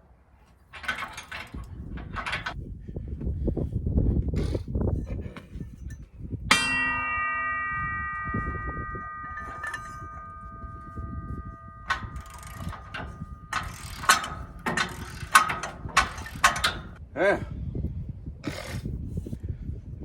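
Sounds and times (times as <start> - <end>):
low rattling and clattering: 0.6 - 2.6, 6.5 - 17.0
metal struck and ringing: 6.5 - 17.0
sharp metal clinks: 6.5 - 17.0.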